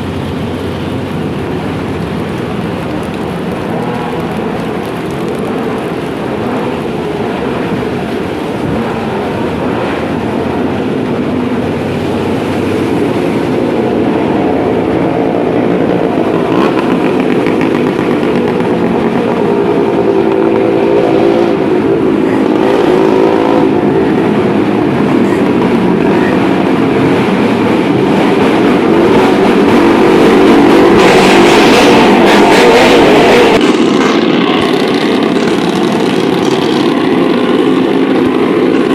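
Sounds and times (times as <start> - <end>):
heavy rain: 0.0 - 38.9
vehicle engine running: 0.0 - 38.9.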